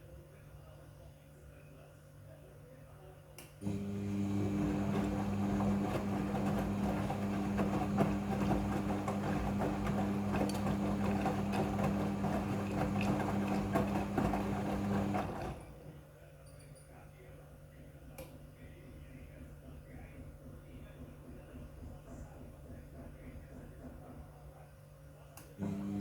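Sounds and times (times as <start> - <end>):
washing machine motor humming: 3.6 - 15.8, 25.6 - 26.0.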